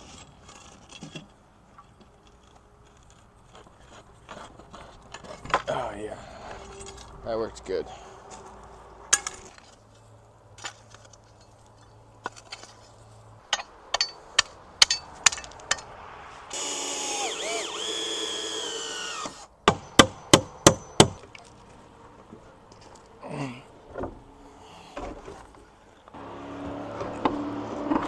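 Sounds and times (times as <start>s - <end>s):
power drill running: 16.5s - 19.5s.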